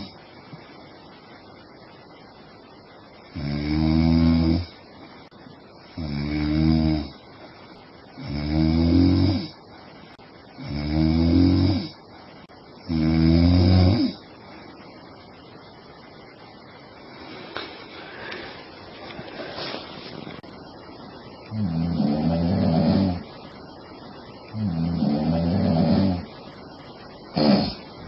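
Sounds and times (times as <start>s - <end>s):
woman snoring: 3.3s - 4.8s, 6.0s - 7.2s, 8.2s - 9.6s, 10.6s - 12.0s, 12.9s - 14.2s, 21.5s - 23.2s, 24.5s - 26.3s, 27.3s - 27.8s.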